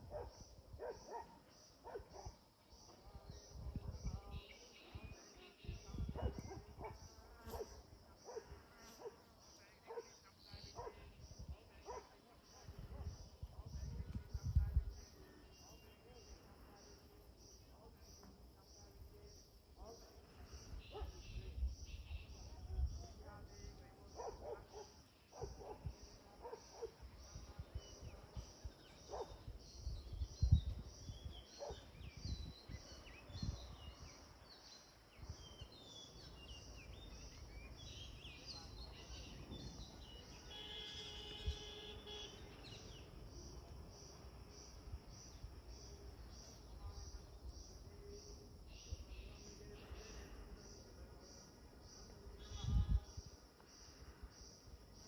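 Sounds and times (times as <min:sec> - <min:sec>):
insect chirping: 0:00.0 - 0:55.0
birds chirping: 0:26.4 - 0:44.5
long drawn-out call: 0:40.2 - 0:42.9.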